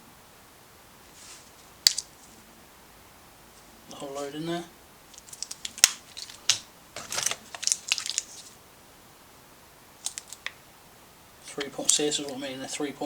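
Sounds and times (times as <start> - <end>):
drill bit boxes rattling: 5.1 - 8.5.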